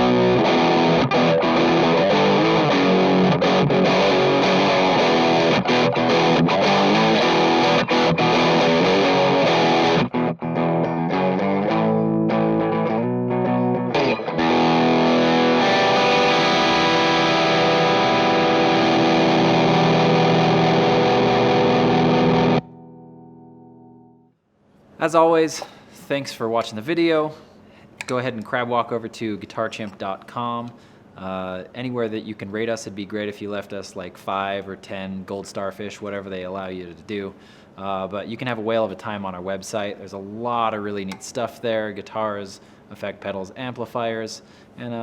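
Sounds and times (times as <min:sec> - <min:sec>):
distorted electric guitar riffing: 0:00.0 - 0:24.1.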